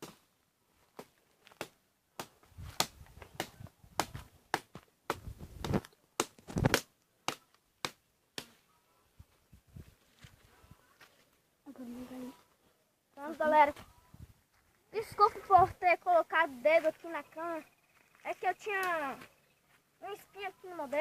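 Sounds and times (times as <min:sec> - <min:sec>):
footsteps crunching on forest floor: 0:09.3 - 0:12.6, 0:13.2 - 0:15.7, 0:16.5 - 0:21.0.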